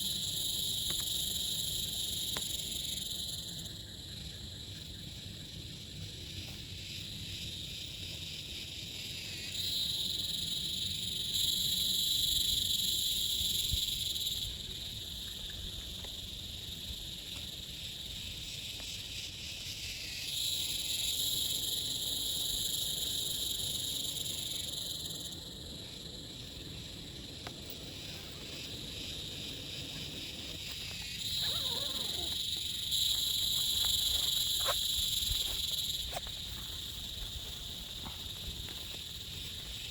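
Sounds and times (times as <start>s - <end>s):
insects trilling chorus: 0.0s - 39.9s.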